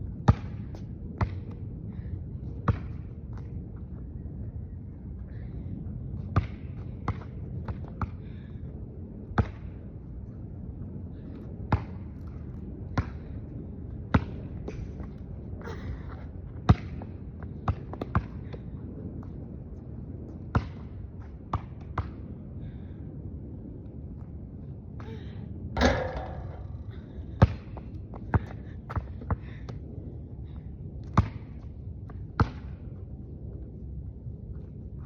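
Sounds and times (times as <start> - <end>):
low background rumble: 0.0 - 35.0
basketball bouncing on hard court: 16.7 - 17.0, 17.6 - 18.3, 25.8 - 26.8.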